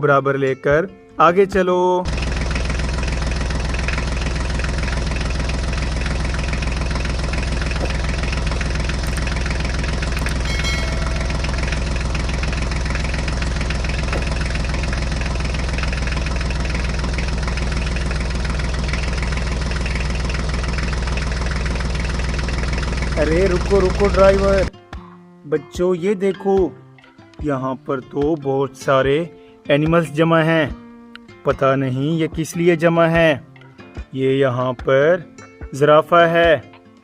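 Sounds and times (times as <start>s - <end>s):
tractor engine idling: 2.1s - 24.7s.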